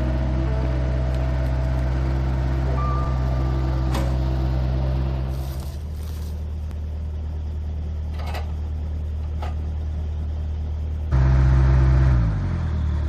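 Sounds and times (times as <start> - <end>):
engine running and revving: 0.0 - 6.4, 11.1 - 13.0.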